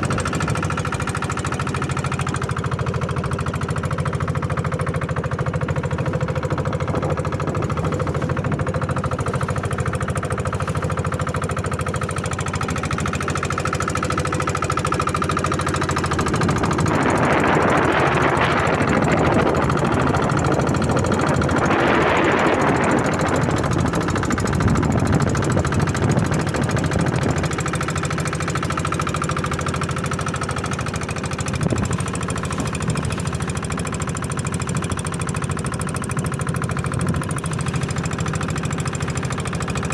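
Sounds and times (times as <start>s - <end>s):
boat engine knocking: 0.0s - 39.9s.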